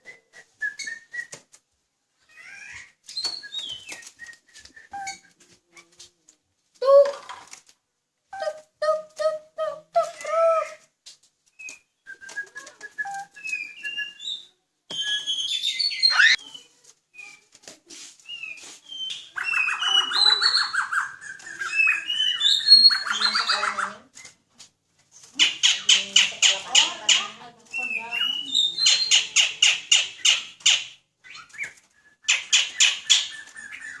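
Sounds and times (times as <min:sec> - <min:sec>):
songbird chirping and whistling: 0:00.0 - 0:01.4, 0:02.3 - 0:05.4, 0:11.5 - 0:17.5, 0:18.2 - 0:24.4, 0:25.4 - 0:30.4, 0:31.2 - 0:34.0.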